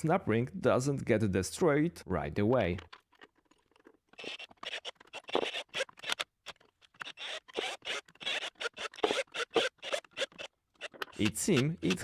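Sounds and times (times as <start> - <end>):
steel parts scraping and clicking: 2.4 - 12.0.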